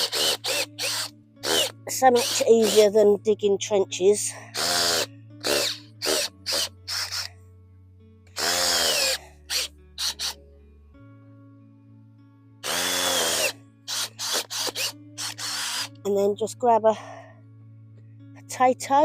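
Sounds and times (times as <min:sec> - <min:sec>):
drill trigger blips: 0:00.0 - 0:02.8, 0:04.6 - 0:07.3, 0:08.4 - 0:10.4, 0:12.6 - 0:15.9
power drill whining: 0:00.0 - 0:02.8, 0:04.5 - 0:07.3, 0:08.4 - 0:10.4, 0:12.6 - 0:16.0.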